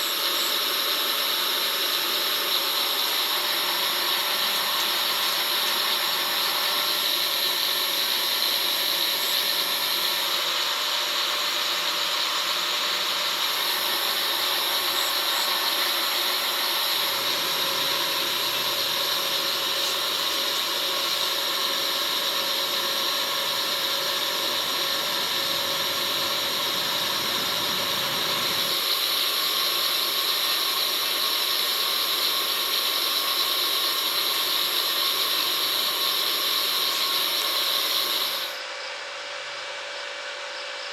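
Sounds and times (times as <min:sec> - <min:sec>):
welding arc hissing: 0:13.2 - 0:30.6, 0:34.6 - 0:38.6.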